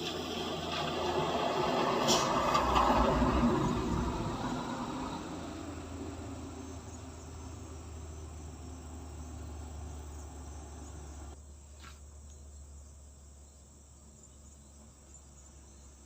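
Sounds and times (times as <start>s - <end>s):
diesel engine: 0.0s - 11.4s.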